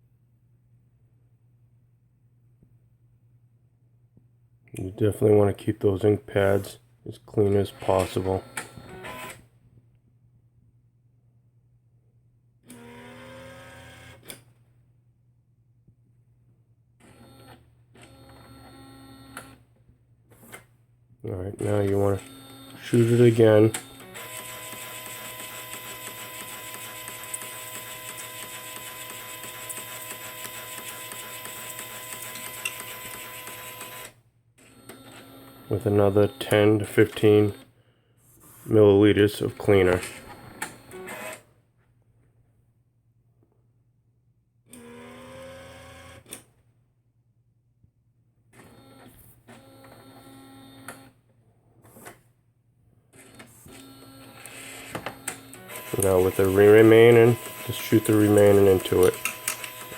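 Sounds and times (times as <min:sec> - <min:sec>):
printer mechanical whir: 0:07.4 - 0:09.4, 0:21.6 - 0:34.1, 0:34.7 - 0:36.5, 0:39.4 - 0:41.4, 0:48.7 - 0:51.1, 0:53.3 - 0:59.9
printer clicks: 0:55.0 - 0:56.7, 0:57.3 - 0:59.9.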